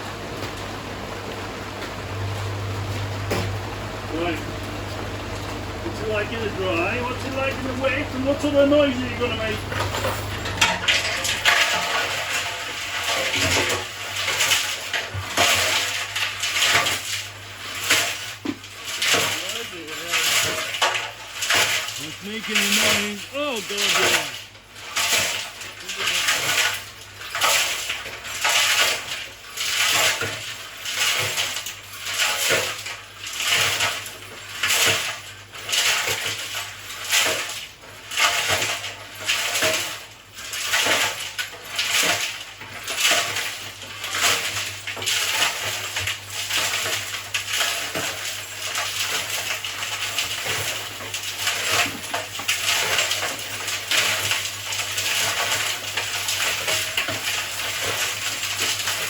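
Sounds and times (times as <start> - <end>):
low motor hum: 0.0 - 13.0.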